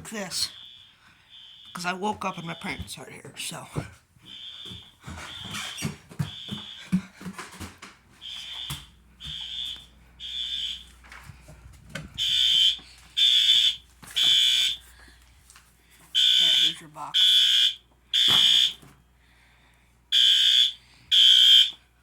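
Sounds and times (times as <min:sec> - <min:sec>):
fire alarm horn beeping: 0:00.2 - 0:03.0, 0:04.3 - 0:07.0, 0:08.2 - 0:11.0, 0:12.2 - 0:14.8, 0:16.2 - 0:18.8, 0:20.1 - 0:21.8.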